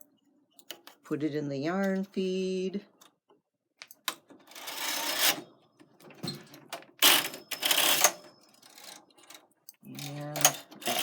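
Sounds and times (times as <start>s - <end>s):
knitting machine carriage rattling: 6.6s - 11.0s.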